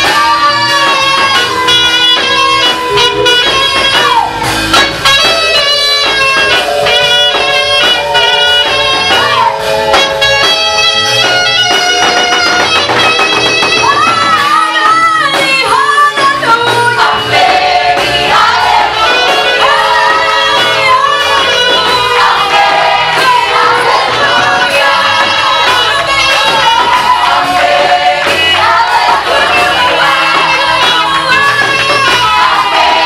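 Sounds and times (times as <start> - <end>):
gospel band chords: 0.0 - 33.0
voices singing: 14.1 - 33.0.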